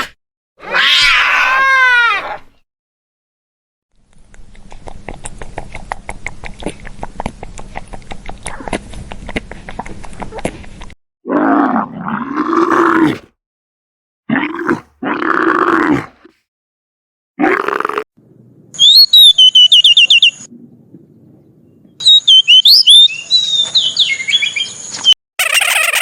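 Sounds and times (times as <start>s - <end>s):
animal calling: 18.8s - 24.6s, 25.4s - 26.0s.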